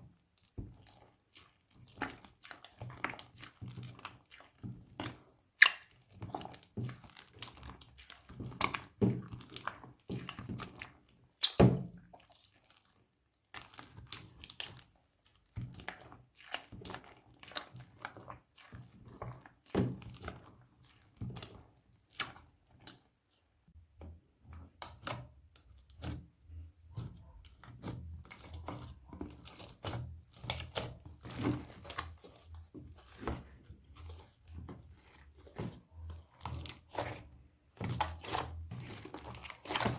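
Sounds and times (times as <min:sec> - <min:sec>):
slime squelching by hand: 0:00.2 - 0:39.9
crinkling: 0:26.6 - 0:39.9.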